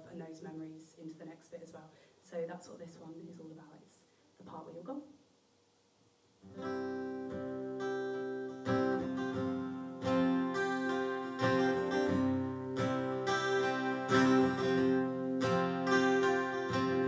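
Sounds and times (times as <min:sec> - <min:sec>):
acoustic guitar strumming chords: 0:06.5 - 0:17.0.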